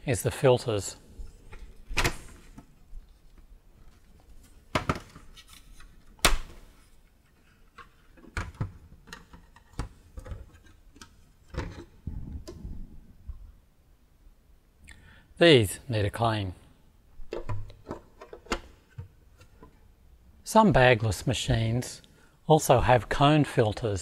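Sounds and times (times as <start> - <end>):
plastic parts clicking and knocking: 4.7 - 12.7, 17.2 - 19.8.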